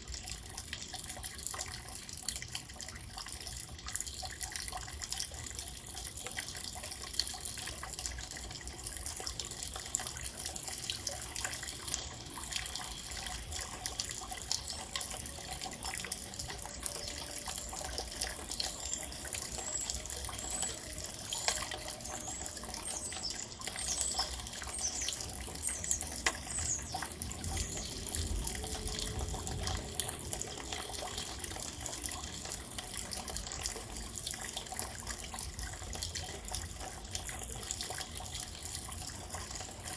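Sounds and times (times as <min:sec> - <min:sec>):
faint high chirps: 0:14.5 - 0:28.4.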